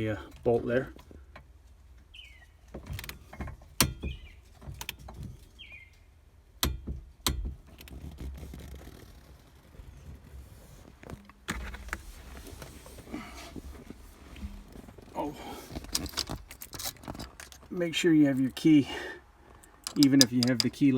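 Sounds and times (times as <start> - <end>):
hand tools clicking on metal: 19.6 - 20.9.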